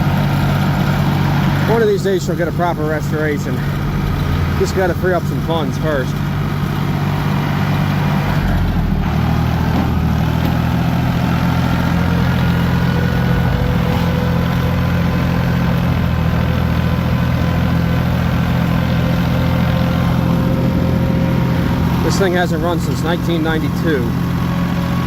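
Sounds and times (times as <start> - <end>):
diesel tractor engine running: 0.0 - 25.0.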